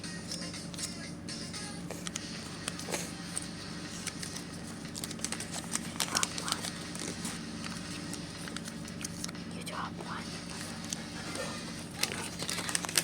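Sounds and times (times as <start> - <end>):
steady low hum: 0.0 - 13.0
paper crinkling: 1.9 - 9.4, 10.3 - 13.0.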